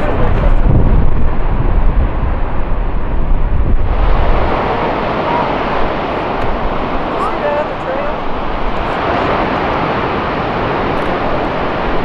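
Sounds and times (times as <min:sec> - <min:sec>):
wind buffeting microphone: 0:00.0 - 0:12.0
waterfall and river rushing: 0:03.8 - 0:12.0.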